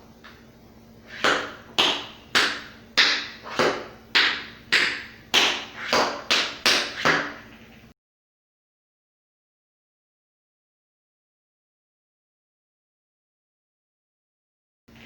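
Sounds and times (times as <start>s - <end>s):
tap shoes on hard floor: 1.1s - 7.6s.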